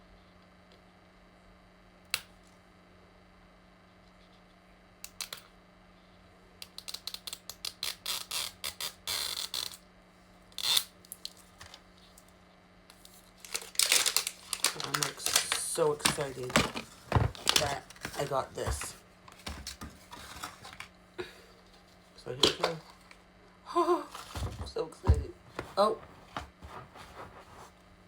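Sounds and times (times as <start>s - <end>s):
rapid plastic clicks and crinkling: 12.9s - 20.9s.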